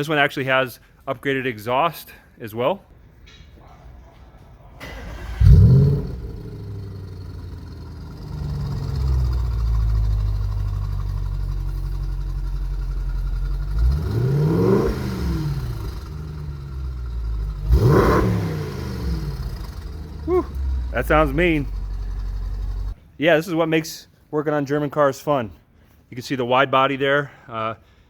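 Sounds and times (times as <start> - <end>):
car engine starting and idling: 4.8 - 23.0
engine revving: 4.8 - 23.0.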